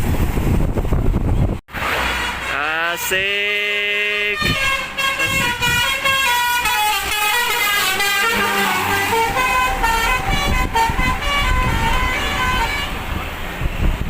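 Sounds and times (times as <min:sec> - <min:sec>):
musical air horn playing tune: 0:01.8 - 0:03.2, 0:04.0 - 0:13.2
bus rumbling past: 0:04.7 - 0:14.0.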